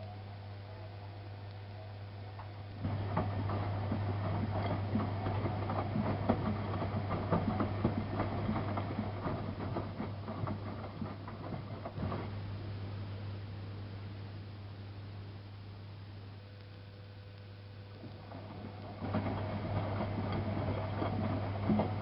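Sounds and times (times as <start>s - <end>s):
washing machine hum: 1.8s - 16.4s, 17.9s - 22.0s
laundry tumbling in washing machine: 2.8s - 12.6s, 18.0s - 22.0s.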